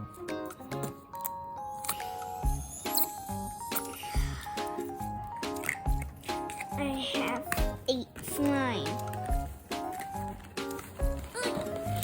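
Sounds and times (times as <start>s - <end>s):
background music with beat: 1.8s - 7.9s, 8.8s - 12.0s.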